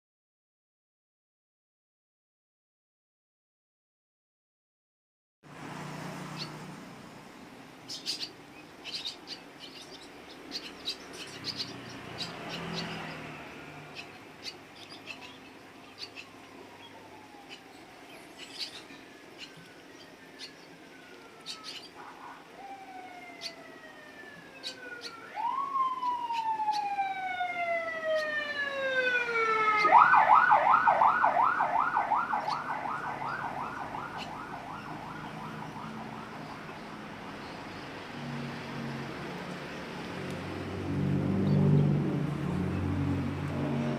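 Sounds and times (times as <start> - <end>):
bird chirps: 6.2 - 6.7, 7.8 - 20.8, 21.4 - 22.4, 23.2 - 23.6, 24.5 - 27.0, 32.3 - 33.4, 34.0 - 38.0
siren wailing: 16.1 - 36.8.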